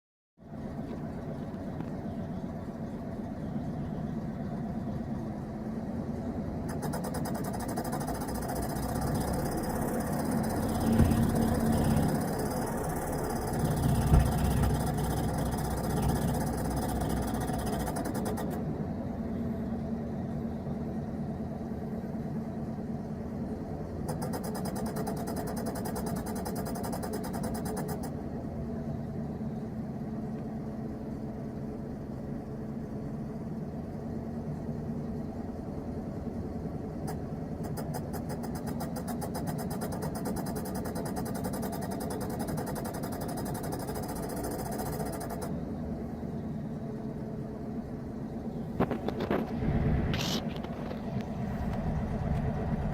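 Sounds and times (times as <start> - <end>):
car engine running: 0.4 - 52.9
fast even ticking: 6.7 - 18.6, 24.1 - 28.1, 37.1 - 45.5.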